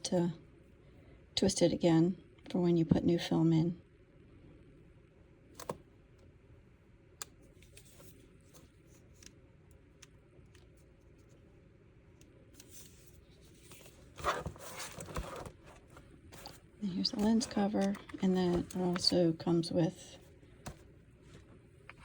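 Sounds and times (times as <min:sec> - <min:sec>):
handling rustle: 0:12.6 - 0:19.2.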